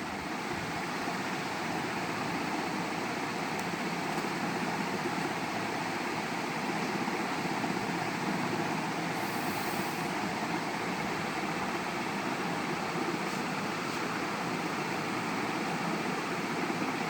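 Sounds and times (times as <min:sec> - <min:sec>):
rumbling hiss: 0:08.2 - 0:14.5.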